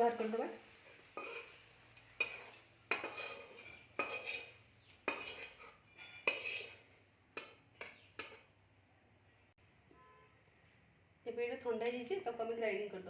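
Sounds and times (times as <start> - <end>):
metal spoon striking metal pan: 2.2 - 4.5, 5.1 - 6.8, 7.4 - 8.5.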